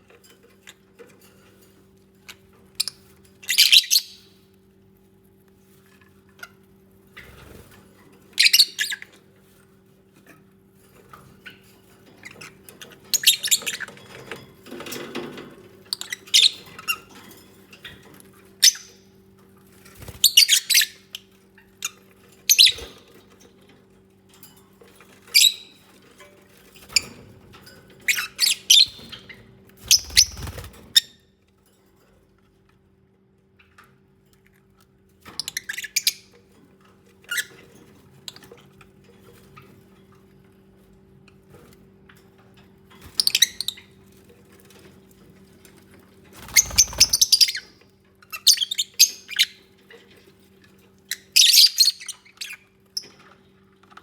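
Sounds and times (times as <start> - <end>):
birds giving squeaky chirps: 2.3 - 4.3, 8.4 - 9.2, 12.2 - 14.2, 15.9 - 17.1, 18.6 - 19.0, 20.0 - 23.1, 25.3 - 25.9, 28.0 - 31.1, 35.4 - 36.3, 43.0 - 44.0, 46.4 - 49.6, 51.0 - 53.2.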